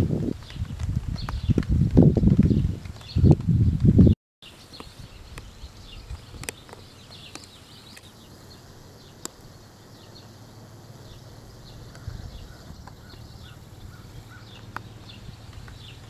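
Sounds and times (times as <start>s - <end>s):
low wind rumble: 0.0s - 4.2s, 4.8s - 16.0s
faint bird chirps: 4.4s - 16.0s.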